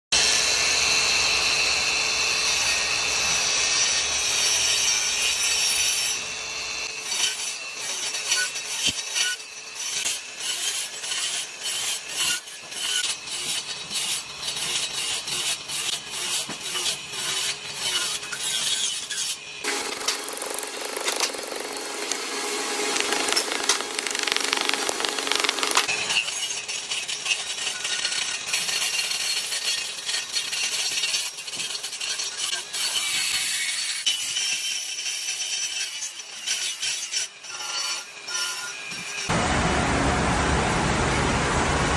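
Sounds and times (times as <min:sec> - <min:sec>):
high-pitched tool whine: 0:00.2 - 0:30.0
scraping and sawing wood: 0:02.5 - 0:39.4
steady cutting sound: 0:10.0 - 0:26.4.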